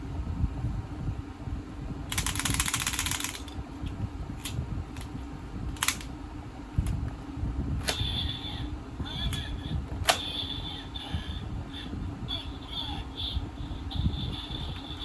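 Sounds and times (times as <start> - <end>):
sharp plastic clicks: 2.1 - 3.6, 5.8 - 6.1
toy belt ratcheting clicks: 2.1 - 3.6, 5.8 - 6.1.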